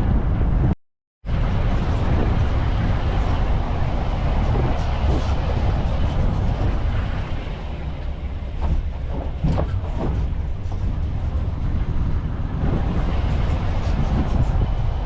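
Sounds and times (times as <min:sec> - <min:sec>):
road and wind buffeting: 0:00.0 - 0:15.0
truck engine rumbling: 0:01.3 - 0:15.0
knocks and rattles: 0:08.0 - 0:12.3.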